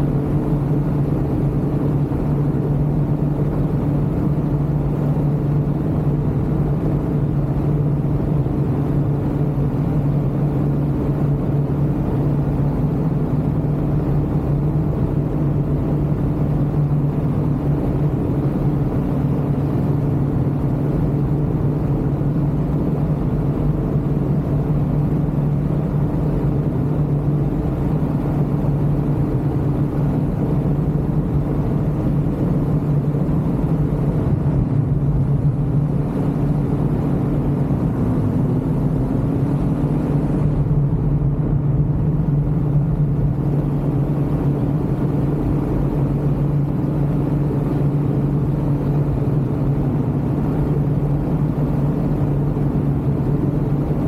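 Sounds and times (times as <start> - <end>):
aircraft engine droning: 0.0 - 54.0.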